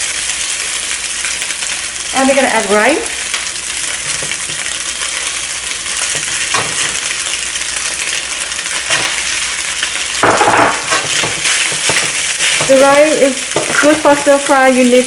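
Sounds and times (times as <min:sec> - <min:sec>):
food sizzling in a pan: 0:00.0 - 0:15.0
metal spatula scraping a pan: 0:10.4 - 0:12.9.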